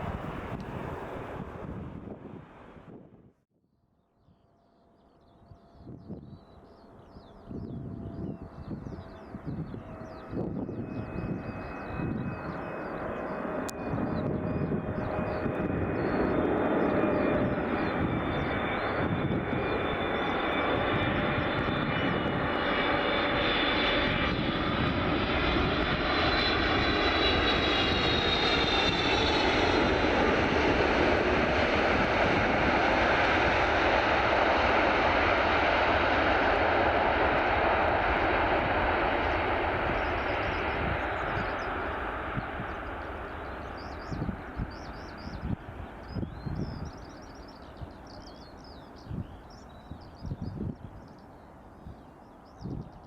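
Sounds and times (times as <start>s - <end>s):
jet engines roaring: 0.0s - 2.9s, 7.7s - 50.1s
high engine whine: 6.8s - 49.0s.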